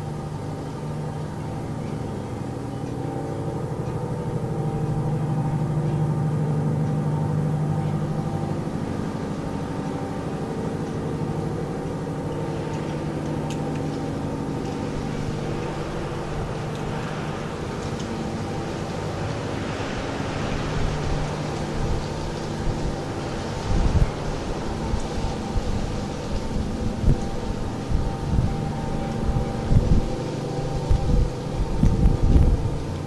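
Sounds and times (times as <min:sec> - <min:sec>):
persistent low drone: 0:00.0 - 0:33.0.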